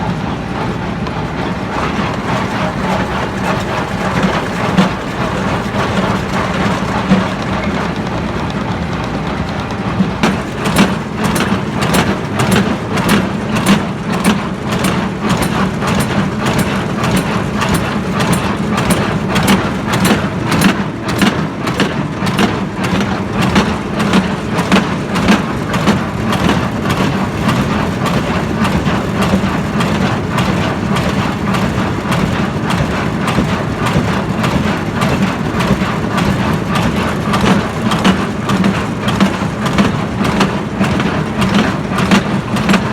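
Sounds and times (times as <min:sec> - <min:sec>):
tractor engine humming: 0:00.0 - 0:20.8
hay baler knocking: 0:00.1 - 0:08.6, 0:10.0 - 0:42.9.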